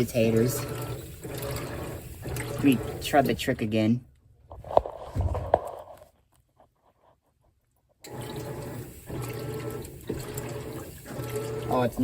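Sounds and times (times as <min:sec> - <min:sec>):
water filling tub hiss: 0:08.0 - 0:12.0.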